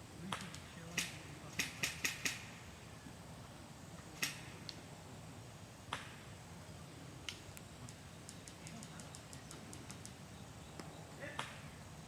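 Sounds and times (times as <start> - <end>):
low steady hum: 0.0 - 12.0
sharp snaps: 0.2 - 2.5, 4.2 - 4.8, 5.9 - 6.2, 7.2 - 10.2, 10.8 - 11.6.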